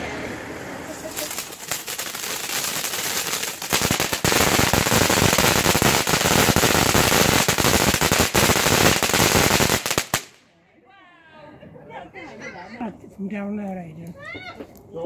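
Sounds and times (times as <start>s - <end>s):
fireworks crackling: 0.0s - 10.5s.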